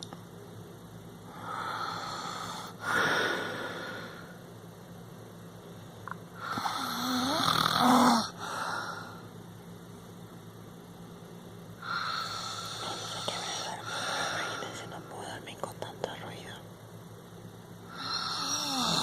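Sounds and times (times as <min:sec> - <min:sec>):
person snoring: 0:01.3 - 0:04.3, 0:06.4 - 0:09.2, 0:11.8 - 0:14.6, 0:17.9 - 0:19.0.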